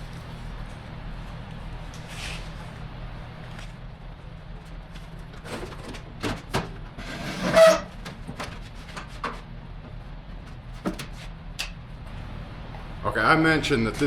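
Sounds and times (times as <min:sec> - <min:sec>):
steady low hum: 0:00.0 - 0:14.0
pitched squeal: 0:07.0 - 0:08.0.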